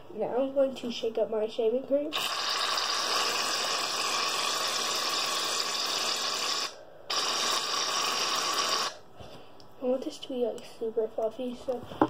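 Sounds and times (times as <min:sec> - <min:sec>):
aerosol can spraying: 0:02.2 - 0:09.0.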